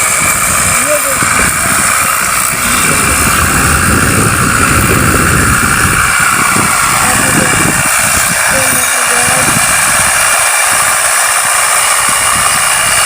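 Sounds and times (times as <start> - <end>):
pressure washer spraying water: 0.0 - 13.0.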